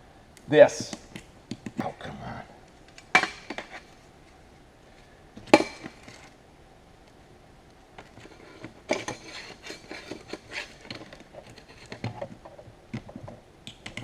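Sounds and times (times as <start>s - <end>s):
hand tools clicking and scraping: 8.0s - 14.0s.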